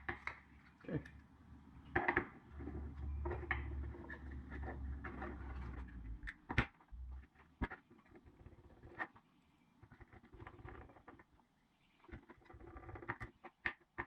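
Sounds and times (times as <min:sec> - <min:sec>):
plastic object handling rumble: 0:02.5 - 0:07.8.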